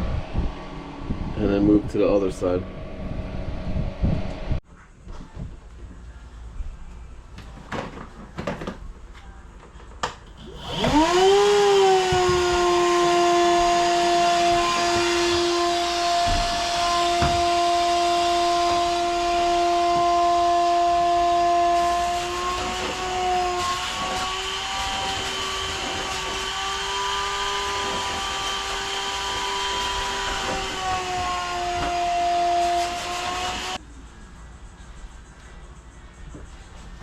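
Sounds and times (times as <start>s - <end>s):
small electric motor whining: 10.4s - 33.8s.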